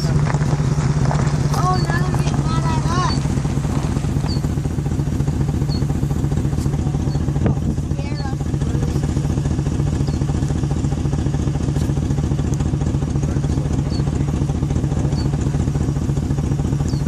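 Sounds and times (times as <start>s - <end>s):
vehicle engine idling: 0.0s - 17.0s
faint bird chirps: 4.2s - 4.5s, 5.6s - 5.9s, 7.0s - 7.3s, 10.0s - 10.3s, 15.1s - 15.4s.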